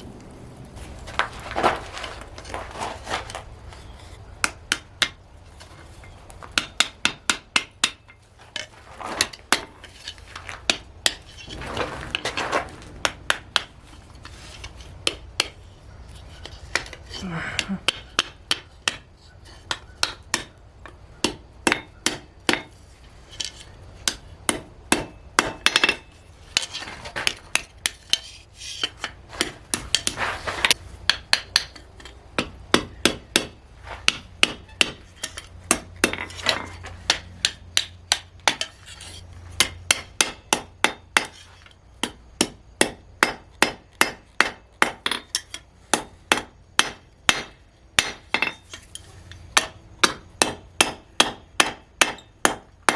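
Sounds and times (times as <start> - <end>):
hammer striking steel on anvil: 17.6 - 19.0, 21.2 - 22.7, 24.1 - 26.1, 42.0 - 52.9.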